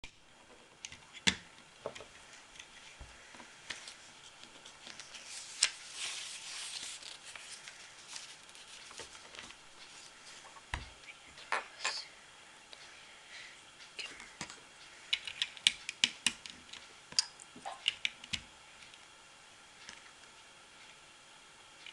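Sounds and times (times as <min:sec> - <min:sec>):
rustling: 0:02.0 - 0:11.5.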